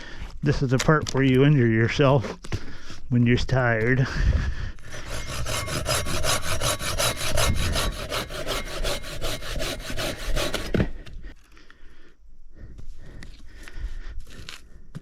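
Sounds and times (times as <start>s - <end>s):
hand saw cutting wood: 4.8s - 11.1s.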